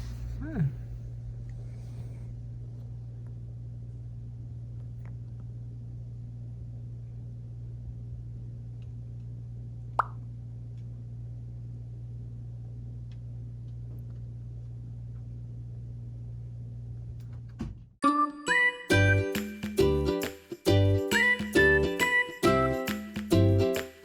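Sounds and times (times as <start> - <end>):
steady low hum: 0.0 - 18.0
bright chiming background music: 18.0 - 20.1.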